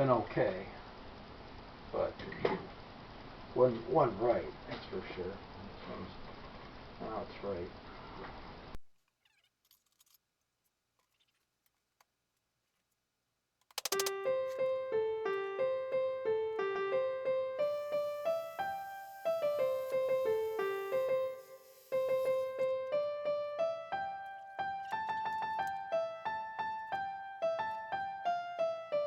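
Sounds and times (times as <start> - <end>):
piano melody: 13.8 - 29.0.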